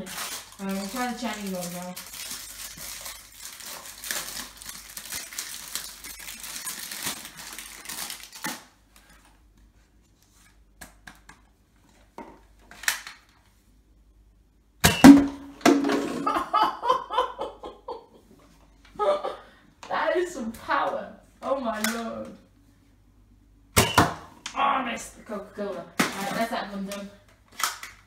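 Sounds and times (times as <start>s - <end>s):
toy blaster firing snap: 23.8s - 24.2s
dart hitting knock: 23.8s - 24.3s.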